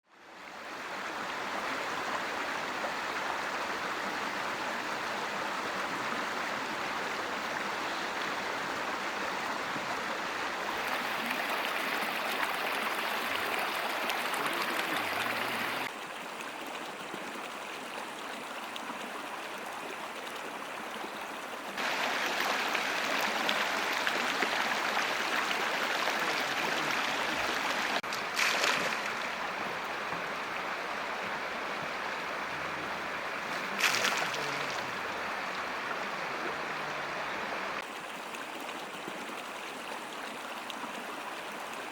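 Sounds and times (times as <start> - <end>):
mountain stream flowing: 0.1 - 41.9.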